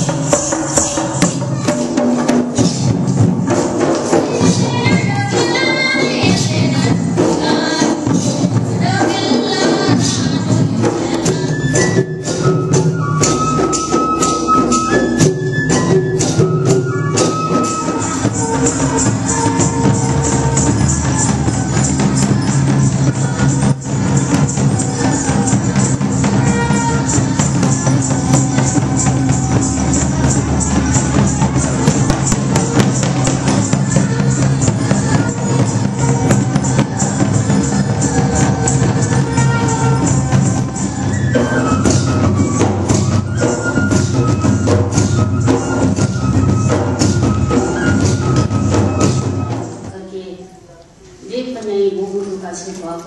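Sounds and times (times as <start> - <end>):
steady percussion: 0.0 - 50.6
drums beating steady rhythm: 0.0 - 53.0
high wind instrument melody: 9.8 - 49.9.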